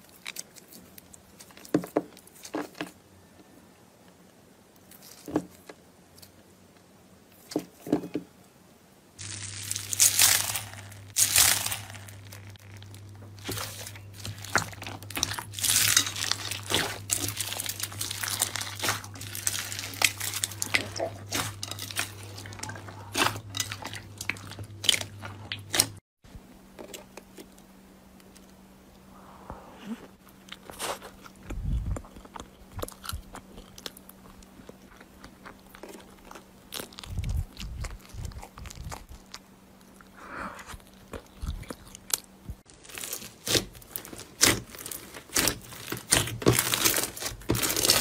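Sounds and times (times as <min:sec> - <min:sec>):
slime crackling and popping: 0:09.2 - 0:26.0, 0:40.8 - 0:48.0.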